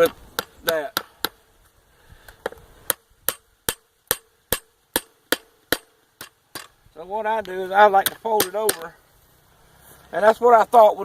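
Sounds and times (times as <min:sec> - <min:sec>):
evenly spaced sharp taps: 0:02.3 - 0:06.8.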